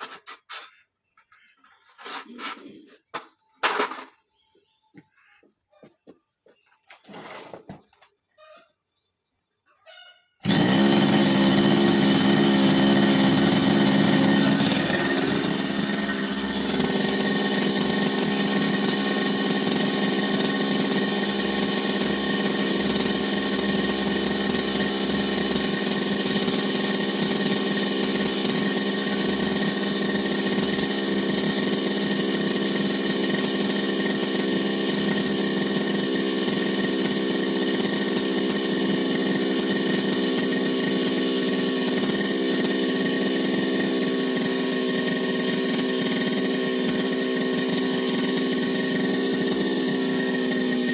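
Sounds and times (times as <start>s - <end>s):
brushcutter engine running: 10.4s - 50.9s.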